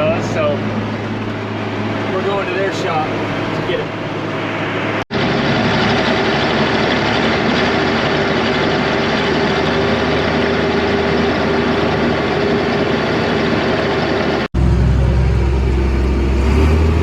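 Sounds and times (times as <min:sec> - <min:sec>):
tractor engine running: 0:00.0 - 0:17.0
constant hum: 0:14.6 - 0:17.0.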